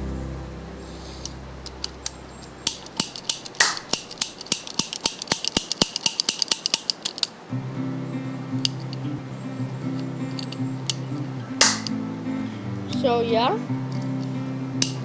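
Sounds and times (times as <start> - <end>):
toy cap gun snapping: 2.7 - 7.3, 11.6 - 11.9, 14.8 - 15.0.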